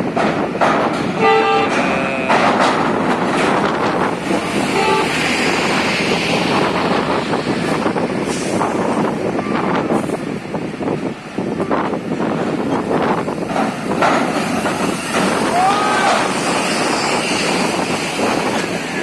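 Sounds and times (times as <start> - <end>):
heavy vehicle traffic noise: 0.0 - 19.0
vehicle horn tooting: 1.2 - 2.4, 4.7 - 5.2.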